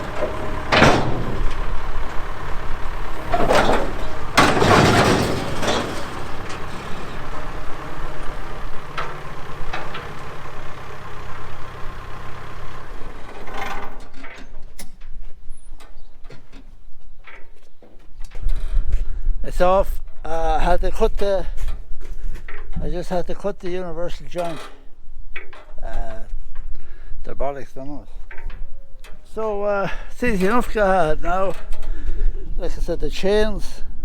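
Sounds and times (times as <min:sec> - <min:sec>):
vehicle engine running: 0:00.0 - 0:14.1
metal scraping and banging: 0:00.0 - 0:16.7.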